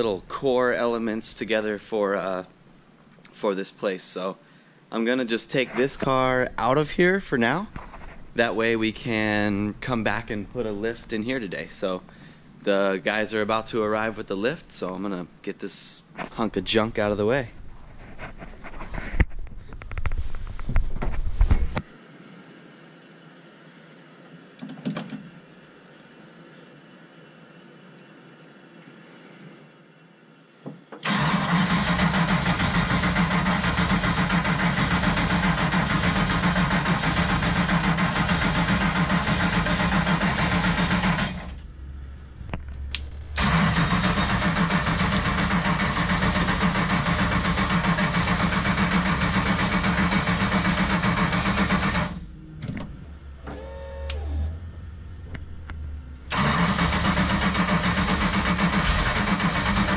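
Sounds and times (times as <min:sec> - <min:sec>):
car engine starting: 0:31.0 - 0:59.9
loud engine running: 0:31.9 - 0:42.1, 0:42.7 - 0:52.5.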